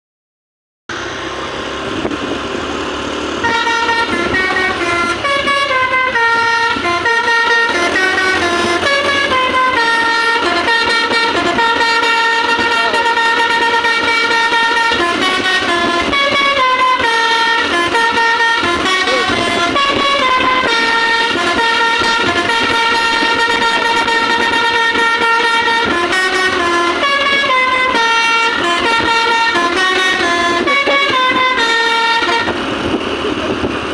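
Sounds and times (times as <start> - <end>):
bus musical air horn tune: 3.4 - 33.6.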